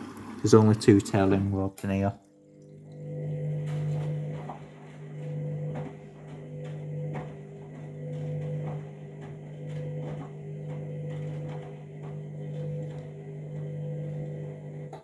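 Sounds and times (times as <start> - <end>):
washing machine motor hum: 0.0 - 15.0
wet laundry tumbling: 3.0 - 15.0.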